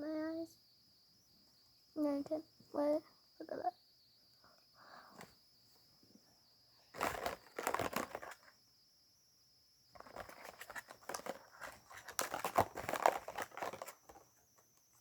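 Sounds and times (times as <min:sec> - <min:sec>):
plastic packaging crinkling: 0:07.0 - 0:08.5, 0:10.0 - 0:14.2.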